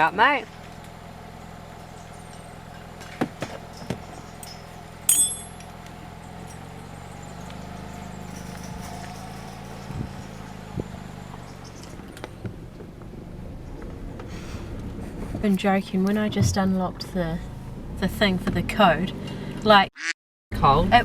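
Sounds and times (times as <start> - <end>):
car engine idling: 0.0 - 19.6
loud ringing metal clink: 4.4 - 5.8, 8.0 - 11.5.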